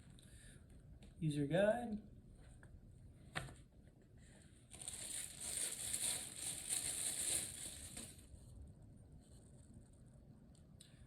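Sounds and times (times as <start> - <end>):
packaging crinkling and rustling: 4.7 - 8.3.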